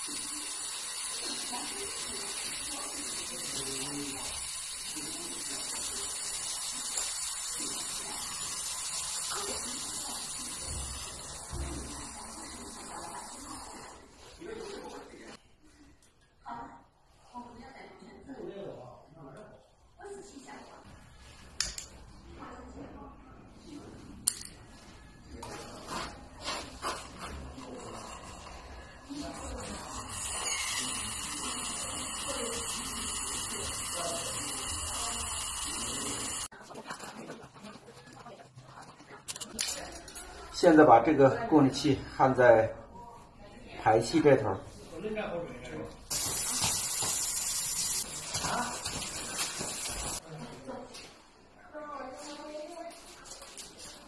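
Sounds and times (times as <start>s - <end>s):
torch flame hissing: 29.4s - 36.5s, 46.1s - 48.1s.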